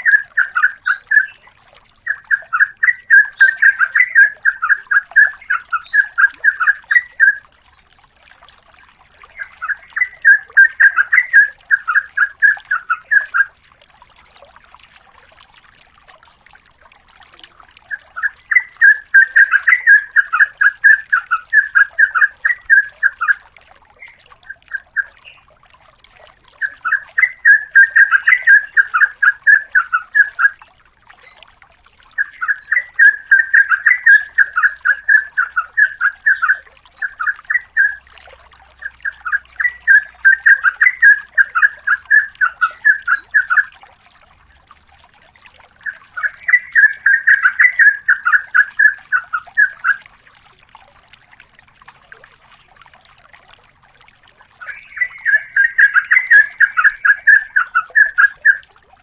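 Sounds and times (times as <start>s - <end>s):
bird singing rapid repeated notes: 0.0s - 7.8s, 9.2s - 13.6s, 17.9s - 23.4s, 24.0s - 43.7s, 45.8s - 50.0s, 54.6s - 58.7s.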